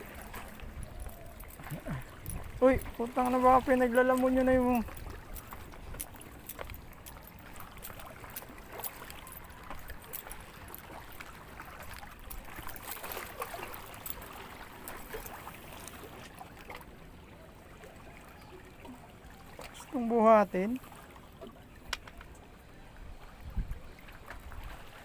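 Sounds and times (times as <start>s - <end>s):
water lapping against rocks: 0.0s - 25.0s.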